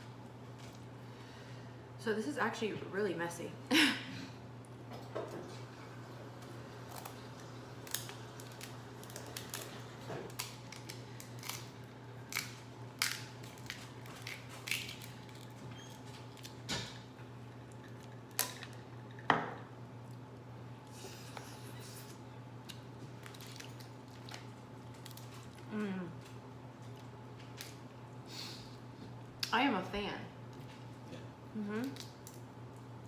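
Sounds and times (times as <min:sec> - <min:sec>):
steady low hum: 0:00.0 - 0:33.0
shells cracking: 0:12.3 - 0:15.4.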